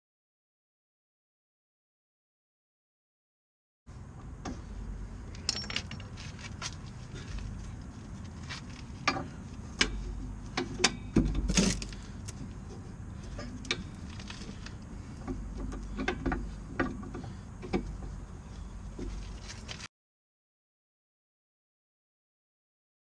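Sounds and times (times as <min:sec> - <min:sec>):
low steady hum: 0:03.9 - 0:19.9
metallic tool clinks: 0:05.4 - 0:06.1.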